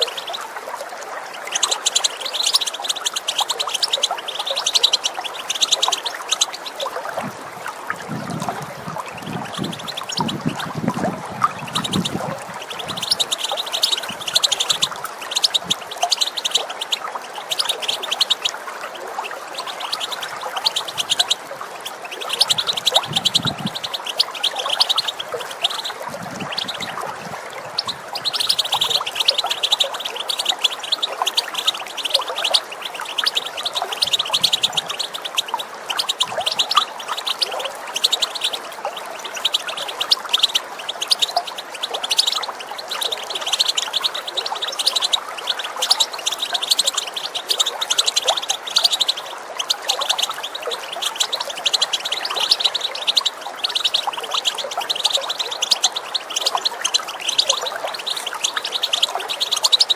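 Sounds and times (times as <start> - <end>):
running water: 0.0 - 59.9
goldfinches twittering: 1.3 - 59.9.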